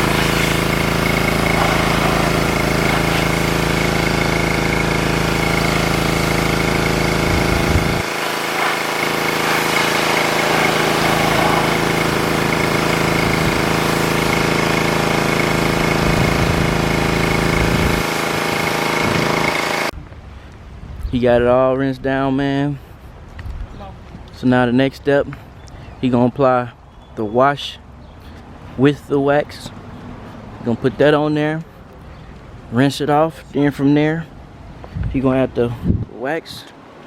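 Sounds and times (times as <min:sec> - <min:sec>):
water spray hissing: 0:00.0 - 0:19.9
pressure washer motor hum: 0:00.0 - 0:20.0.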